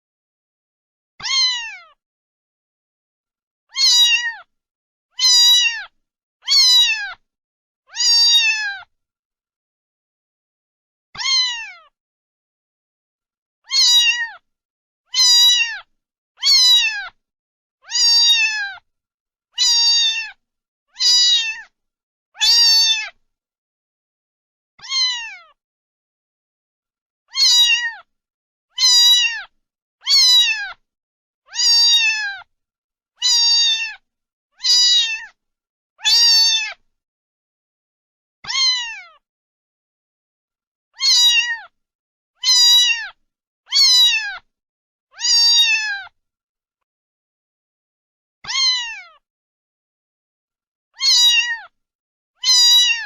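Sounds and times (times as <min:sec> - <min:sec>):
cat meowing: 0:01.2 - 0:02.0, 0:03.7 - 0:04.5, 0:05.2 - 0:07.2, 0:07.9 - 0:08.9, 0:11.2 - 0:12.0, 0:13.6 - 0:14.4, 0:15.1 - 0:17.2, 0:17.8 - 0:18.8, 0:19.6 - 0:21.7, 0:22.4 - 0:23.2, 0:24.8 - 0:25.6, 0:27.3 - 0:28.1, 0:28.7 - 0:30.8, 0:31.5 - 0:32.5, 0:33.2 - 0:34.0, 0:34.6 - 0:35.4, 0:36.0 - 0:36.8, 0:38.4 - 0:39.2, 0:41.0 - 0:41.8, 0:42.4 - 0:44.5, 0:45.1 - 0:46.2, 0:48.4 - 0:49.2, 0:51.0 - 0:51.8, 0:52.4 - 0:53.0.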